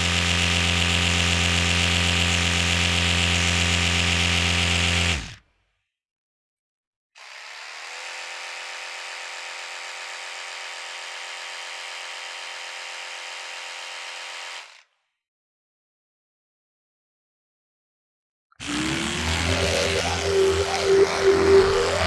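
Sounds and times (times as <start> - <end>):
electric toothbrush buzzing: 18.6 - 22.0.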